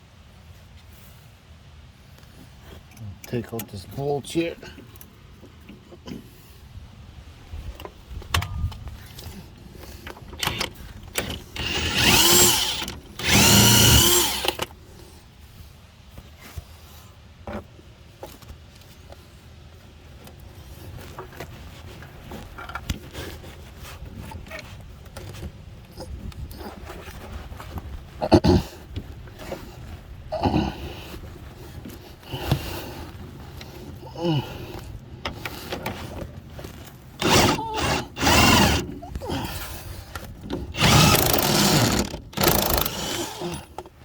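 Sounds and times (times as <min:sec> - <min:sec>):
tools and metal parts clicking: 0:10.0 - 0:14.7, 0:40.7 - 0:43.9
power tool bursts: 0:10.4 - 0:14.7, 0:37.2 - 0:38.9, 0:40.8 - 0:43.7.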